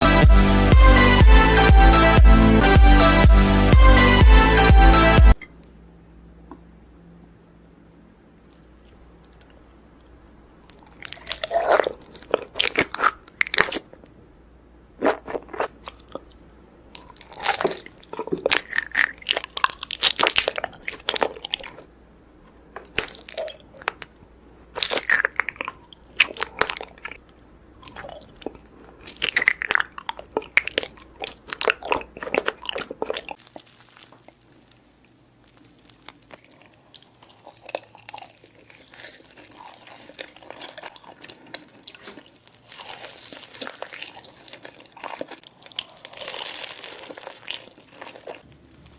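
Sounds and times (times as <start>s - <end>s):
crunchy bites and wet chewing: 10.7s - 14.0s, 15.0s - 21.9s, 22.8s - 48.9s.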